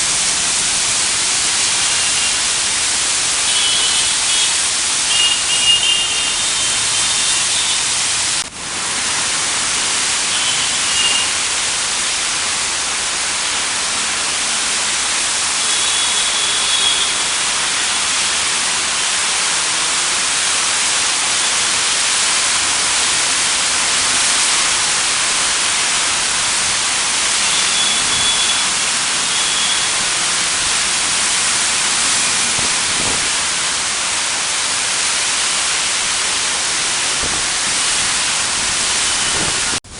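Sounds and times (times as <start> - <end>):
heavy rain: 0.0 - 39.9
traffic on wet road: 0.0 - 39.9.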